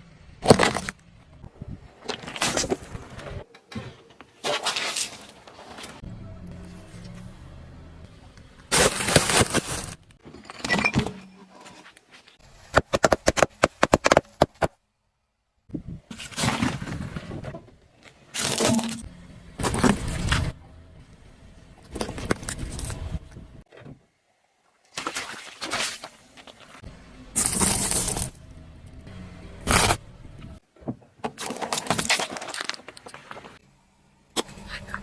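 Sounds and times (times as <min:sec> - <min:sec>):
objects crunching under car tyres: 0:00.4 - 0:01.0, 0:08.7 - 0:10.8, 0:26.4 - 0:28.5, 0:29.6 - 0:30.0, 0:31.3 - 0:33.6.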